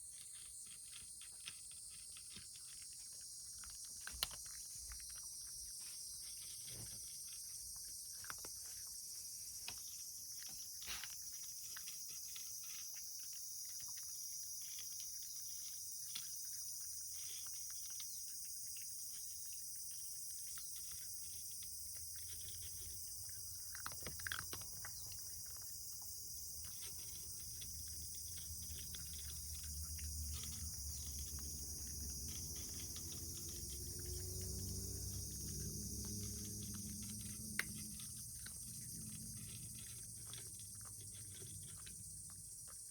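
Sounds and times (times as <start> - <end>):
cat chewing and licking: 0.0 - 42.9.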